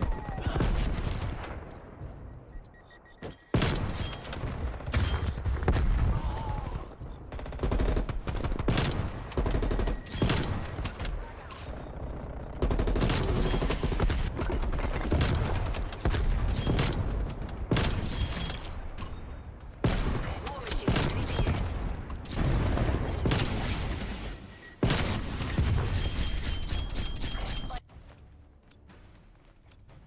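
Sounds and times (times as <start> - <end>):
video game automatic gunfire: 6.5 - 18.5.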